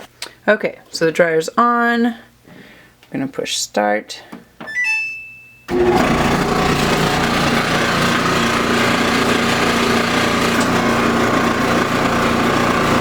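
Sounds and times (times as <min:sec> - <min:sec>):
short beep: 0:04.7 - 0:05.7
dryer grating noise: 0:04.7 - 0:13.0.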